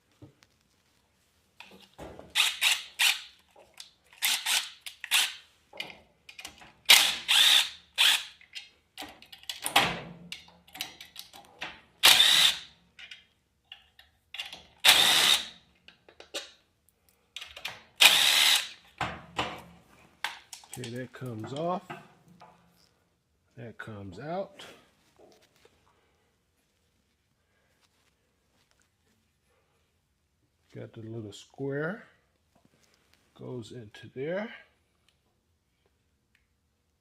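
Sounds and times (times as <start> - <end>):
power drill spinning fasteners: 2.3 - 3.5, 4.1 - 5.5, 6.3 - 9.7, 12.0 - 13.2, 14.4 - 15.6, 17.4 - 19.0.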